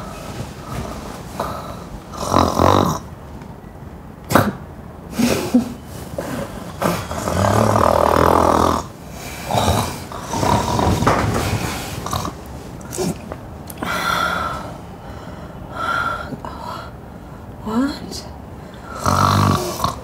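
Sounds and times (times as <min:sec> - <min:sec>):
woman snoring loudly: 0:01.4 - 0:03.1, 0:06.7 - 0:11.1, 0:18.8 - 0:20.0.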